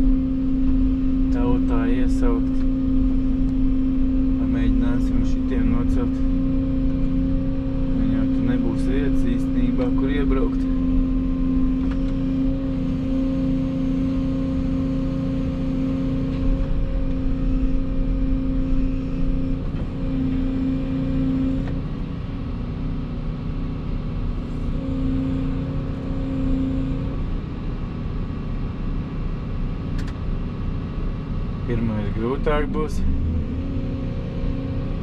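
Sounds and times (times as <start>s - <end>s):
hydraulic whine: 0.0s - 22.7s, 24.3s - 28.0s
excavator diesel rumble: 0.0s - 35.0s.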